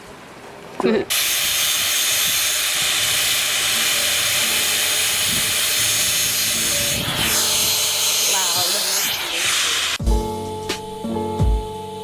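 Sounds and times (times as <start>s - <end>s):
welding arc hiss: 1.1s - 10.0s.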